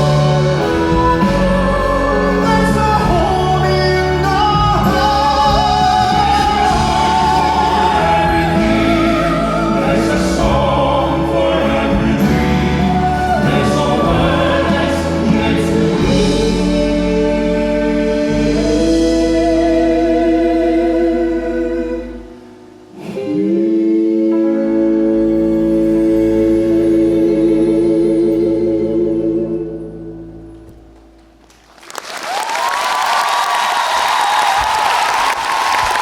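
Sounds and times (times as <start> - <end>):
amplified instrumental backing: 0.0 - 23.0
male vocal quartet singing operatically: 0.0 - 30.4.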